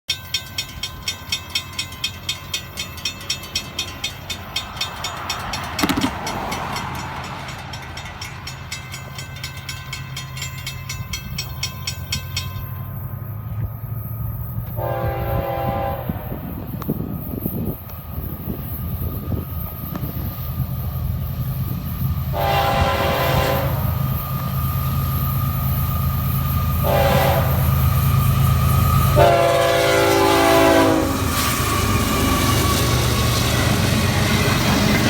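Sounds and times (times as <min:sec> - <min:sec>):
diesel locomotives rumbling: 0:00.1 - 0:35.0
locomotive horn blast: 0:14.6 - 0:16.6, 0:22.3 - 0:24.0, 0:26.8 - 0:27.8, 0:28.8 - 0:31.5.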